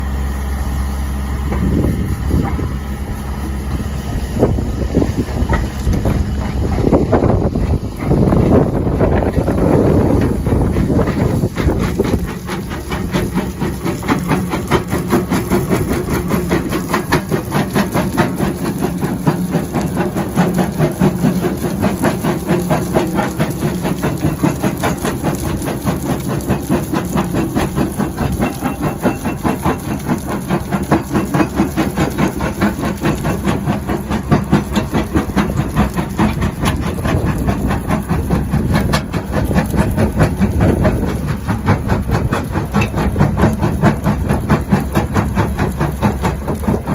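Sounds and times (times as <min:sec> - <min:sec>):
hydraulic crusher bucket pulsing din: 0:00.0 - 0:46.9.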